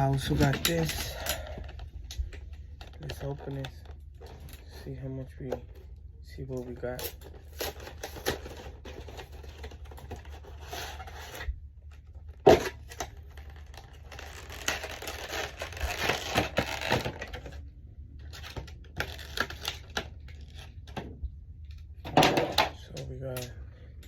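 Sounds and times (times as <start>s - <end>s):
packaging tearing and crinkling: 0.0s - 4.7s, 6.9s - 11.5s, 12.2s - 17.6s, 18.2s - 21.0s.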